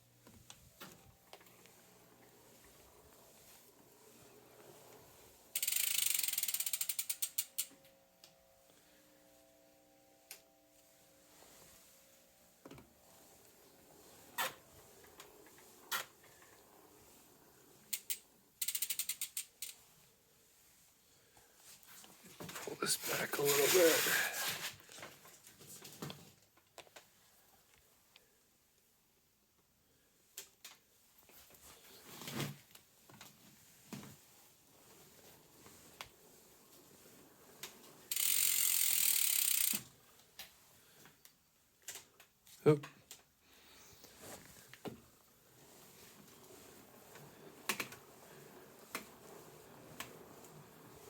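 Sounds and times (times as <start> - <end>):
bike freewheel ratcheting buzz: 5.5 - 7.8, 17.9 - 19.8, 38.1 - 39.9
bicycle gear shifter clicking: 5.6 - 7.7, 17.9 - 19.8, 38.1 - 39.8.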